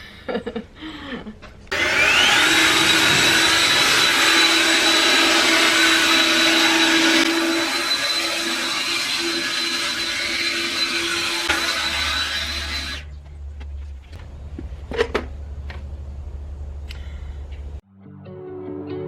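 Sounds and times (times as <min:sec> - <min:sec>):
cordless power tool motor whine: 0:01.7 - 0:13.1.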